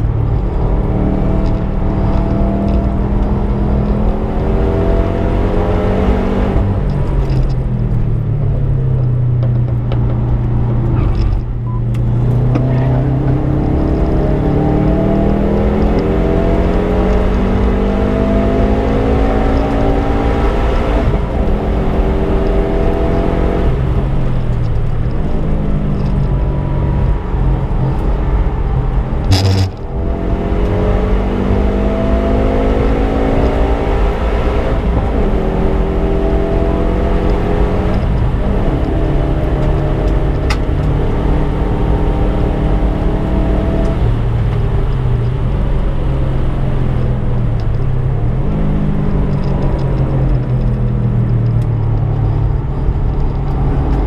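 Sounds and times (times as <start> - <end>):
car engine revving hard: 12.0 - 23.8, 29.0 - 44.3.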